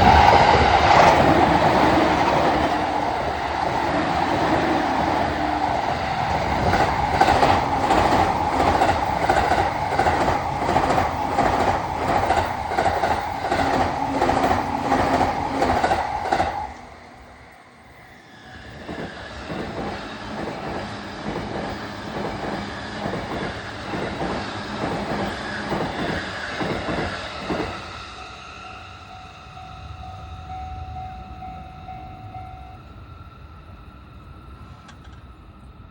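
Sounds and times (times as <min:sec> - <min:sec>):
train wheels clacking over rails: 0:00.0 - 0:16.8, 0:18.6 - 0:28.3.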